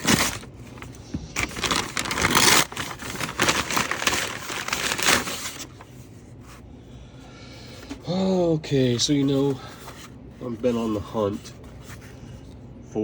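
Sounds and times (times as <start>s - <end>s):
packaging crinkling and tearing: 0.0s - 5.9s.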